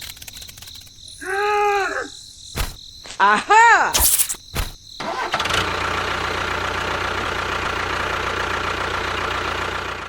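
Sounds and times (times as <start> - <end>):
small engine idling: 5.0 - 10.0.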